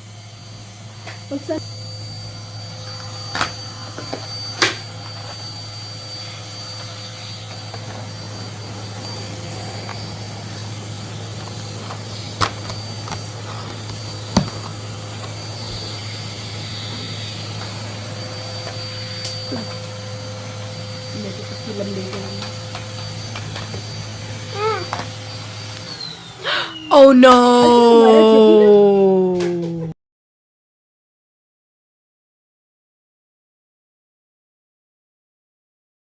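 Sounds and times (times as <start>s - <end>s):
vacuum cleaner motor humming: 0.0s - 28.7s.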